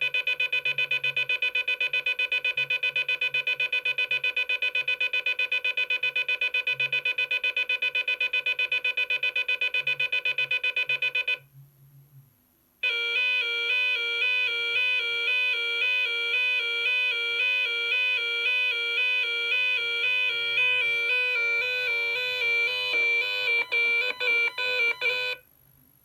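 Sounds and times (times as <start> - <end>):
rapid high alarm beeping: 0.0 - 11.4, 12.8 - 25.4
alarm tone alternating pitches: 12.8 - 25.4.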